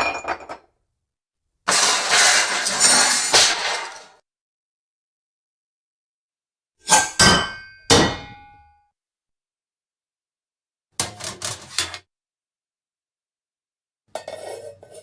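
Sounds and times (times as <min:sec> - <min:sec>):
metal pots and pans clanging: 0:06.9 - 0:08.6.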